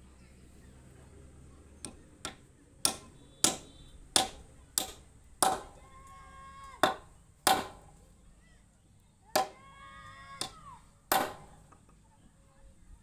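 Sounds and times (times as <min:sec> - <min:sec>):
hammer blows on wood: 0:01.9 - 0:05.8, 0:06.8 - 0:07.9, 0:09.4 - 0:09.7, 0:10.3 - 0:11.6.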